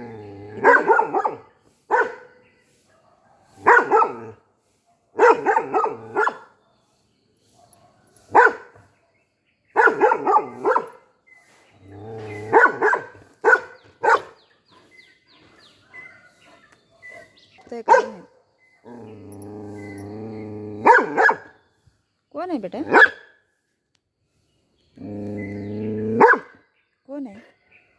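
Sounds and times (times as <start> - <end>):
dog barking deeply: 0.5 - 2.3, 3.3 - 4.4, 5.2 - 6.5, 8.3 - 8.7, 9.8 - 10.9, 12.1 - 14.4, 20.8 - 21.5, 22.9 - 23.2, 25.4 - 26.6.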